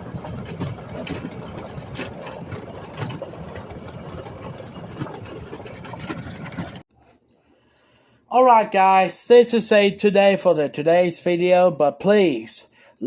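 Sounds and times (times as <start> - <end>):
small engine running: 0.0 - 6.8
rattling and clicks: 0.0 - 6.9.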